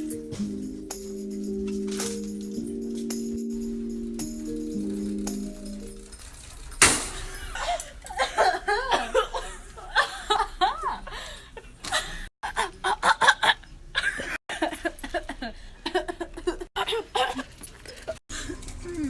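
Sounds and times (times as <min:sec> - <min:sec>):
young women laughing: 0:07.1 - 0:19.0.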